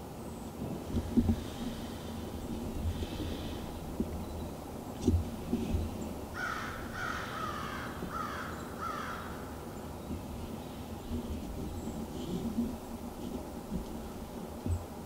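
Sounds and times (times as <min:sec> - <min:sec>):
crow cawing: 0:06.4 - 0:09.4.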